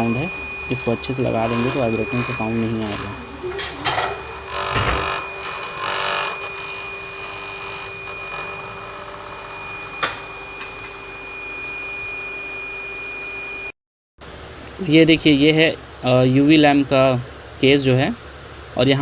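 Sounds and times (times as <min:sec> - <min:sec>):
high electronic beep: 0:00.0 - 0:07.1
water purifier pump humming: 0:00.0 - 0:11.3.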